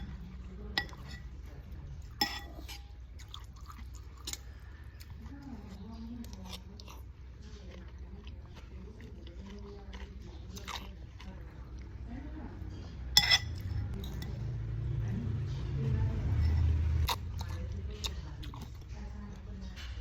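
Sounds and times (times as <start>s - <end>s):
person chewing noodles: 2.0s - 12.0s, 16.5s - 19.0s.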